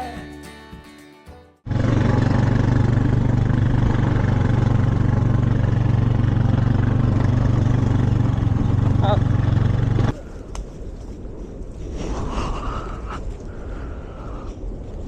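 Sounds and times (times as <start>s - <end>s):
motor engine running: 1.7s - 10.1s.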